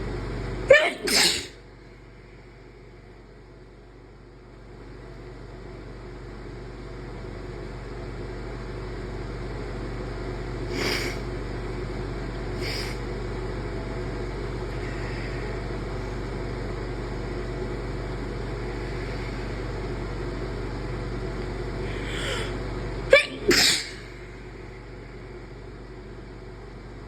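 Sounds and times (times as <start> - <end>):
steady low hum: 0.0 - 27.0
person sneezing: 0.7 - 1.6, 22.0 - 24.2
person breathing in: 10.7 - 11.3, 12.6 - 13.0, 21.8 - 22.6.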